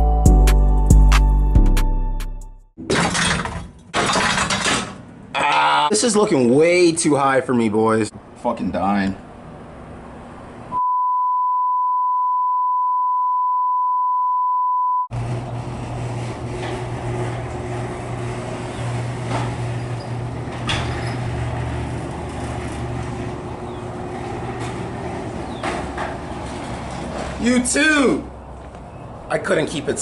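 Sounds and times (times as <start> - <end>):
long beep tone: 10.8 - 15.1.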